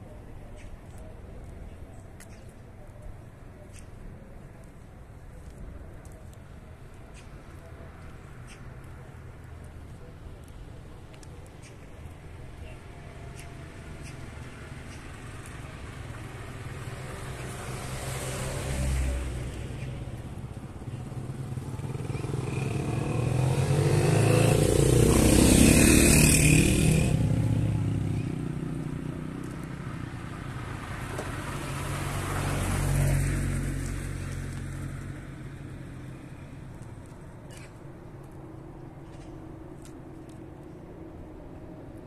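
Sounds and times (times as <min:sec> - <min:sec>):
motor vehicles passing by: 0:00.0 - 0:42.0.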